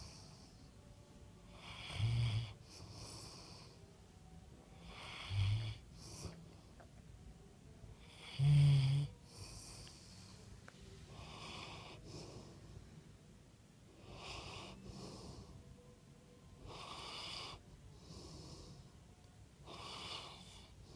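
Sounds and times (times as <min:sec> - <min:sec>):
wheezy breaths: 0:00.0 - 0:00.8, 0:01.5 - 0:04.0, 0:04.7 - 0:06.8, 0:08.0 - 0:13.0, 0:13.9 - 0:15.9, 0:16.6 - 0:20.9
person snoring: 0:08.0 - 0:10.1.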